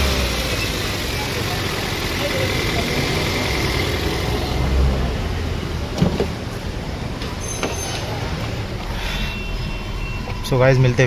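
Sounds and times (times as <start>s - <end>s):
car engine idling smoothly: 0.0s - 4.6s.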